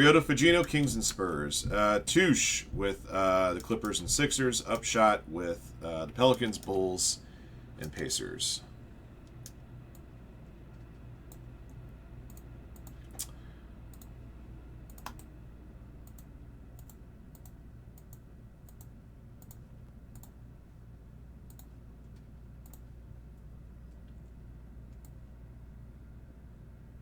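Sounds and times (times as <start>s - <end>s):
steady low hum: 0.0s - 27.0s
sharp snaps: 12.3s - 13.4s.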